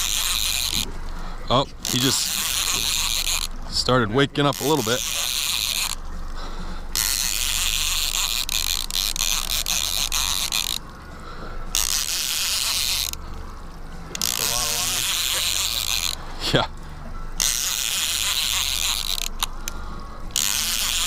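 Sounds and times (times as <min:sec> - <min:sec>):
fishing reel whirring: 0:00.0 - 0:21.0
low hum: 0:00.0 - 0:21.0.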